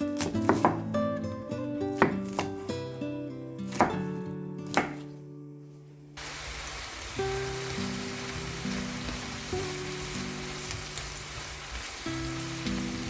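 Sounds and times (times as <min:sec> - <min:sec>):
background music: 0:00.0 - 0:05.6, 0:07.2 - 0:13.0
knife chopping on cutting board: 0:00.2 - 0:00.9, 0:02.0 - 0:02.5, 0:03.7 - 0:04.0, 0:04.7 - 0:05.1
food sizzling in a pan: 0:06.2 - 0:13.0.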